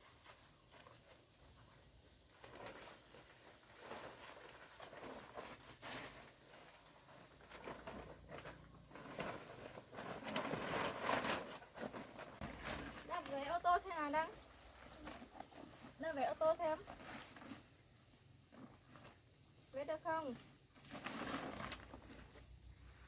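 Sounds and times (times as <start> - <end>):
rustling and scuffing: 0.0 - 23.0.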